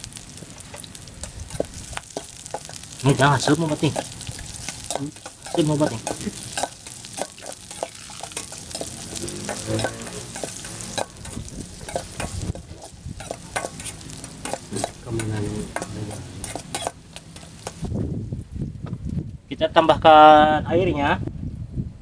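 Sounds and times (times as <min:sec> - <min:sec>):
vegetables sizzling in oil: 0:00.0 - 0:18.0
utensil clicking and scraping pan: 0:00.6 - 0:17.9.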